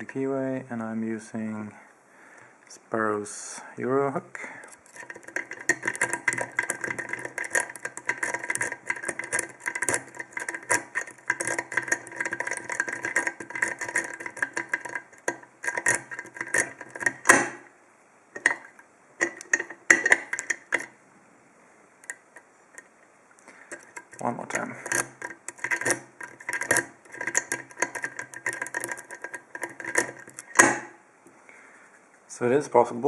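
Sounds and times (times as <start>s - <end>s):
lock pick scraping and clicking: 4.6s - 17.7s, 18.4s - 21.0s, 22.0s - 30.9s
loud lock click: 17.2s - 17.7s, 30.4s - 31.0s.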